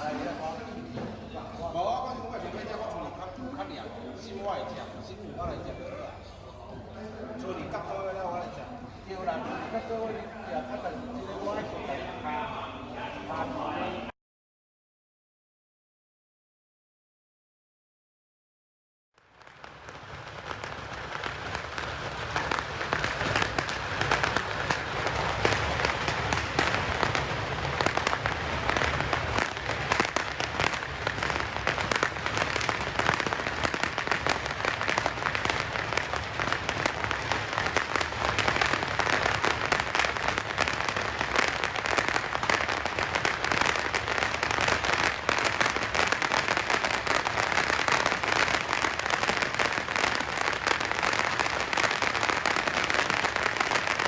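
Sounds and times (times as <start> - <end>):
fireworks crackling and banging: 0.0 - 4.8, 19.2 - 54.0.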